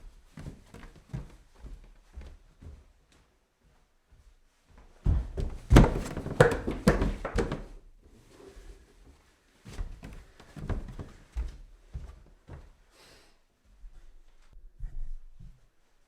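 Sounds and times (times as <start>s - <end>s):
footsteps climbing stairs: 5.0s - 7.8s.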